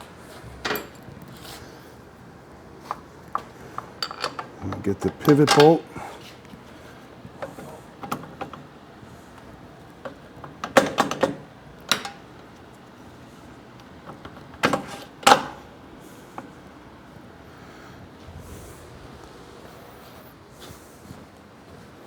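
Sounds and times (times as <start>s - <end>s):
metallic clinks and knocks: 0.6s - 1.4s, 3.3s - 5.9s.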